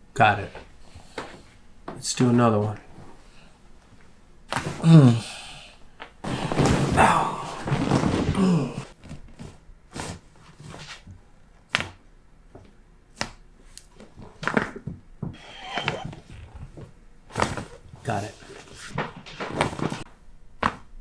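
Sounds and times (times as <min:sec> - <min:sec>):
rustling and shifting: 0:06.0 - 0:11.2, 0:15.4 - 0:20.1.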